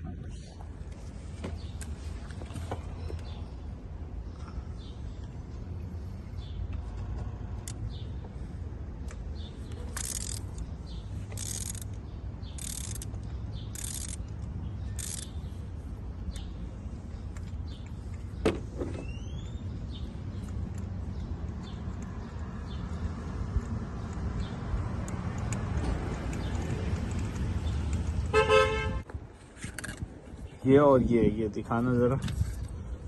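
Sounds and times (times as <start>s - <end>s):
ratchet ratcheting: 9.7s - 15.4s.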